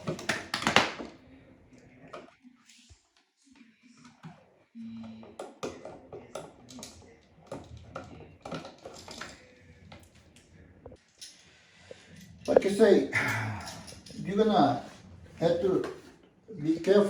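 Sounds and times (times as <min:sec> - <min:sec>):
clicks and taps of hard objects: 0:00.0 - 0:01.1.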